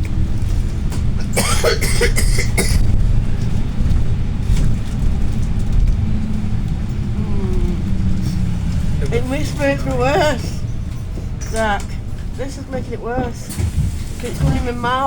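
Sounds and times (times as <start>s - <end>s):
bus engine rumble and road noise: 0.0s - 15.0s
person coughing hard: 1.3s - 2.9s.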